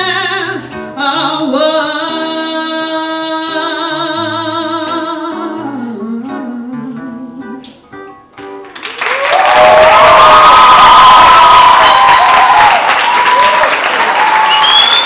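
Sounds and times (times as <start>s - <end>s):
woman singing with vibrato: 0.0s - 7.6s
plucked acoustic guitar: 0.0s - 8.8s
crowd applause and cheering: 8.6s - 15.0s.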